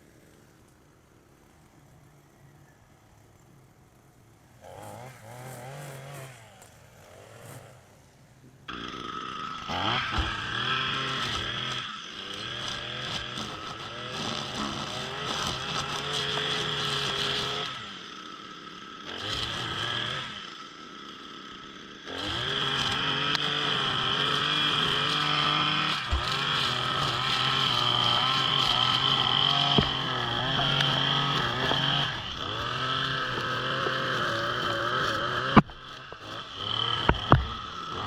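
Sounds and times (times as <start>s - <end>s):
small gas engine whining: 0.0s - 38.0s.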